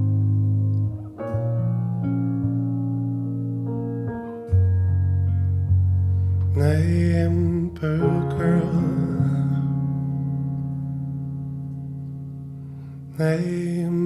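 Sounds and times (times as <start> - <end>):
slow song with vibrato singing: 5.8 - 14.0.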